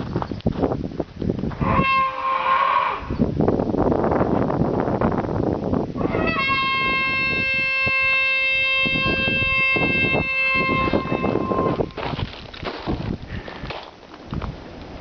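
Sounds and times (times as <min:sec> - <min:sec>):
noisy rumbling background: 0:00.0 - 0:15.0
trumpet-like horn tone: 0:01.6 - 0:03.2, 0:06.0 - 0:12.1.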